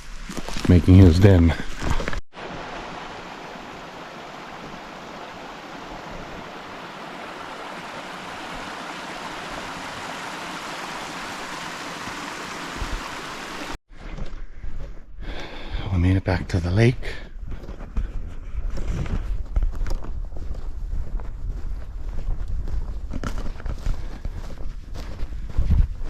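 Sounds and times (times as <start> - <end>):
mountain stream rushing: 2.3 - 13.8.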